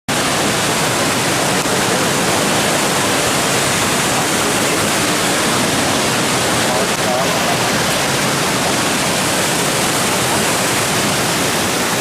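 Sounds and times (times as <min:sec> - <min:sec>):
waterfall rushing: 0:00.1 - 0:12.0.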